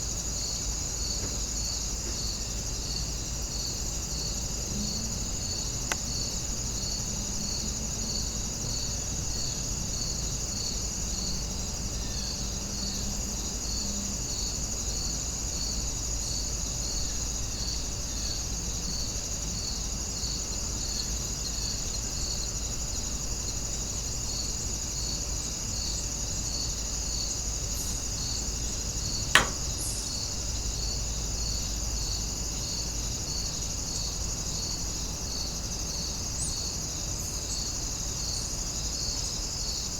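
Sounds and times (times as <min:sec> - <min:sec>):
insect chirps: 0:00.0 - 0:39.9
insects trilling: 0:00.0 - 0:39.9
sharp click: 0:29.4 - 0:30.1.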